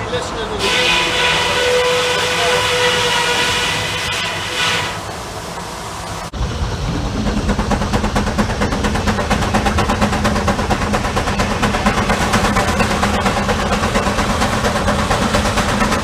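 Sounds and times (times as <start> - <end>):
sawmill blade pulsing: 0.6 - 16.0
engine hum: 5.0 - 16.0.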